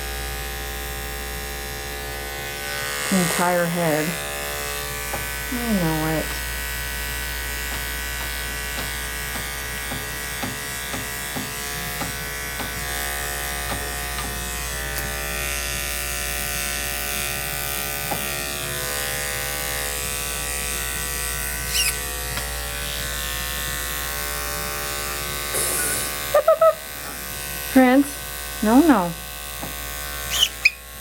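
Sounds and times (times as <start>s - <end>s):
electric clippers buzzing: 0.0s - 31.0s
high squeak: 21.7s - 22.1s, 30.3s - 30.9s.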